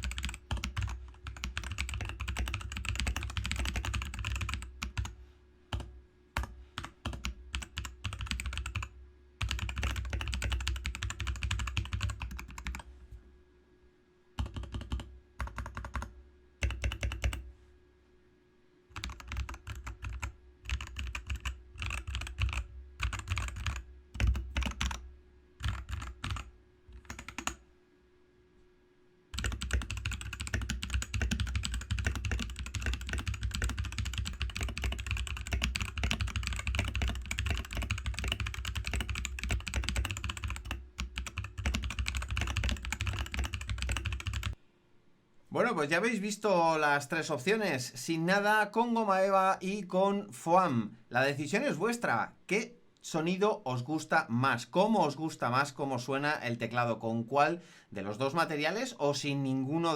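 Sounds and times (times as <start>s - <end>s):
mechanical keyboard typing: 0.0s - 12.9s, 14.4s - 17.4s, 18.9s - 25.0s, 25.6s - 27.6s, 29.4s - 44.6s
faint steady hum: 0.0s - 59.9s.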